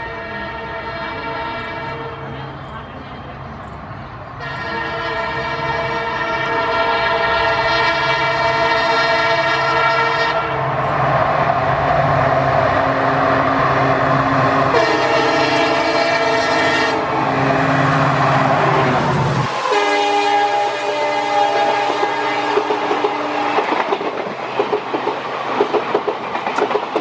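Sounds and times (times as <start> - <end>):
locomotive horn blast: 0.0 - 2.5, 4.4 - 10.6, 12.8 - 23.7
passing train rushing: 0.0 - 27.0
wheels on rail: 0.0 - 27.0
diesel engine: 10.4 - 21.8.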